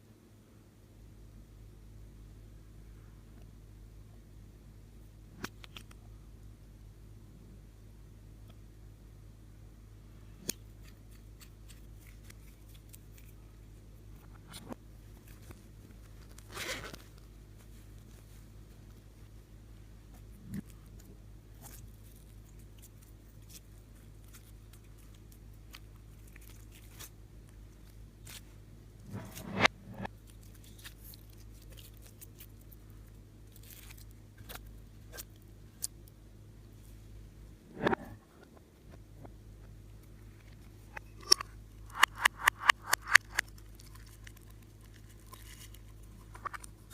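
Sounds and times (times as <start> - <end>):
steady low hum: 0.0 - 46.9
scissors snip: 41.2 - 43.5
sticky slime pop: 41.2 - 43.5.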